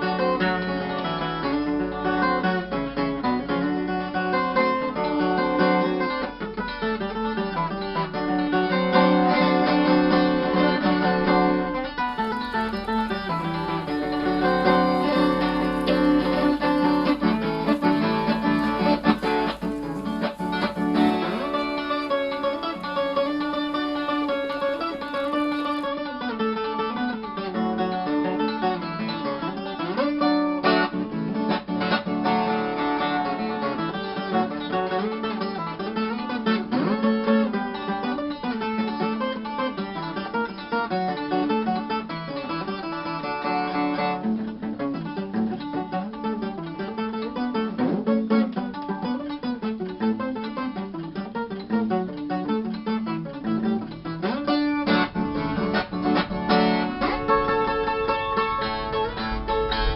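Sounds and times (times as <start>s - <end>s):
guitar playing country tune: 0.0s - 59.9s
ten-string guitar playing: 12.1s - 25.9s, 45.0s - 59.9s.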